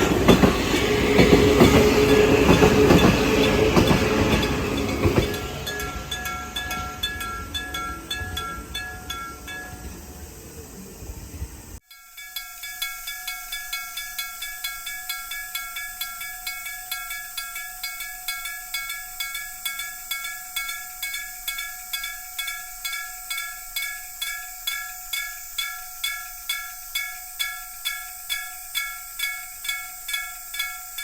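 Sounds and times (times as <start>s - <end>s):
level crossing bell ringing: 0.6s - 10.0s.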